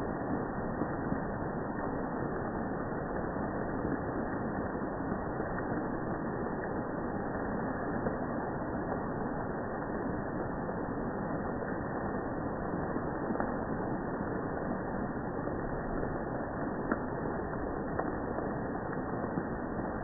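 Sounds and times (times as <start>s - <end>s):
rain rushing: 0.0s - 20.0s
water dripping: 11.4s - 20.0s
faint drop ticks: 16.7s - 17.2s, 17.8s - 19.5s.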